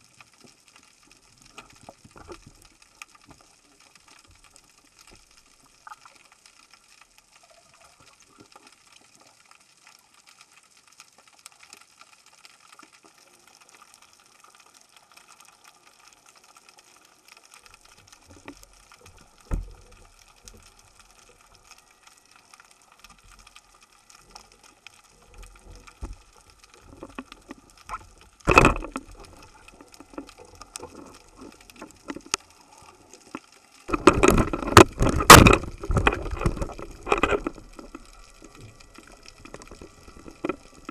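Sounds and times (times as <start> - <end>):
small clicks: 0.1 - 40.9
choppy water splashing: 23.1 - 40.9.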